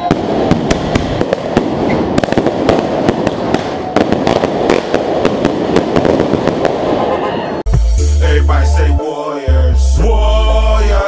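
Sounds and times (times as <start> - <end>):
firework cake bangs and crackles: 0.0 - 7.0.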